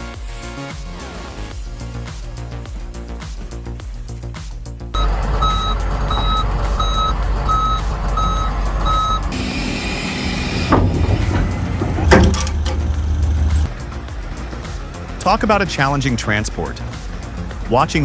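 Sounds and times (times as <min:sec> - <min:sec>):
reversing alarm beeping: 0:05.0 - 0:11.3
diesel engine running: 0:05.0 - 0:15.6
air release hiss: 0:05.1 - 0:16.1.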